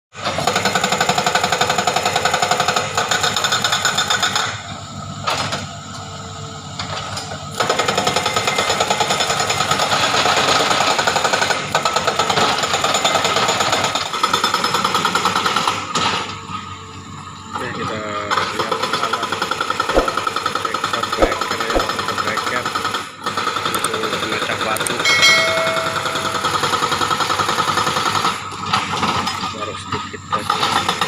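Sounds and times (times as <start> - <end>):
low steady engine drone: 1.8 - 7.9, 15.1 - 31.0.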